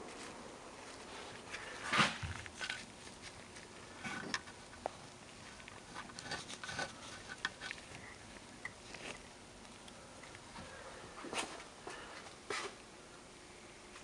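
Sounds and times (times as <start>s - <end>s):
light scraping and small clicks: 0.9s - 10.4s.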